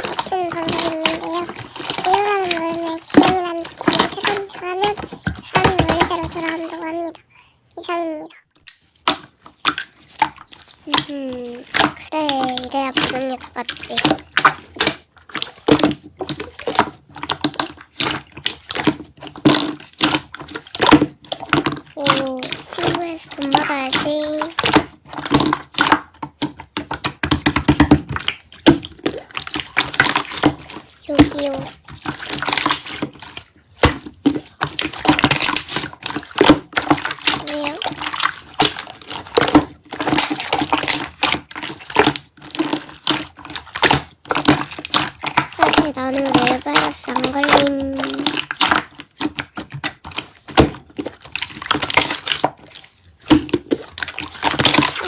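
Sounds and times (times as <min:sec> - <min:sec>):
slime squishing and popping: 0:08.6 - 0:55.0.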